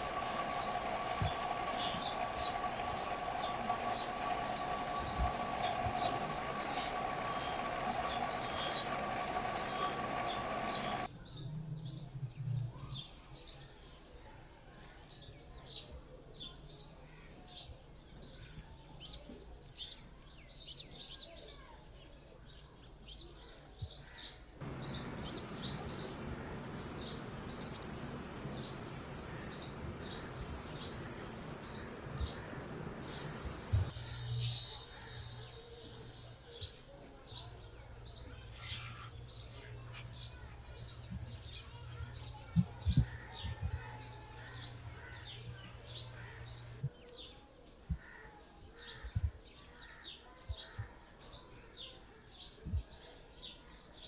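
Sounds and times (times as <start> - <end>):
loud bursts of hiss: 0.0 - 11.1, 24.6 - 37.3
steady humming tone: 0.0 - 11.1, 24.6 - 46.9
small birds chirping: 0.0 - 54.0.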